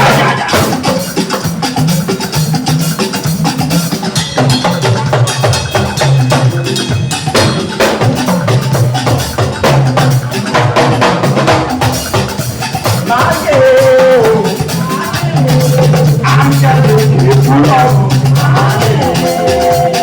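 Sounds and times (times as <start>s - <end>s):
person singing: 0.0s - 0.8s, 13.0s - 20.0s
live band playing: 0.0s - 20.0s.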